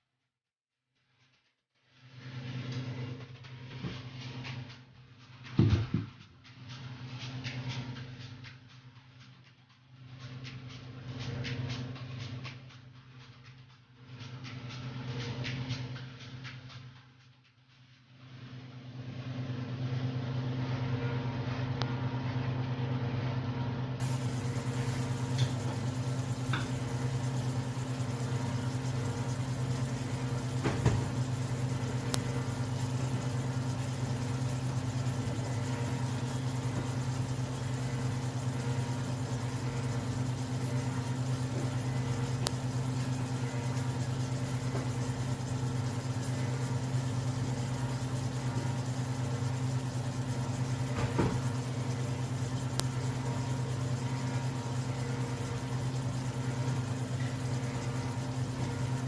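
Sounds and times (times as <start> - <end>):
low mechanical hum: 1.8 - 59.0.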